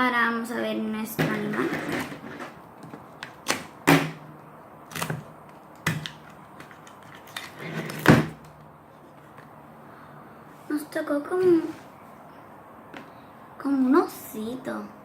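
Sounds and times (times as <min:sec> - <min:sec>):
plastic packaging clicks and knocks: 0:04.9 - 0:08.6.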